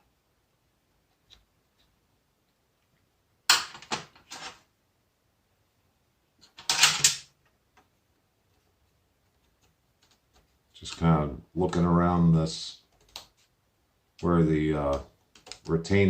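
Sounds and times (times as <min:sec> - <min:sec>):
clattering and scraping: 0:03.6 - 0:04.7, 0:06.4 - 0:07.3.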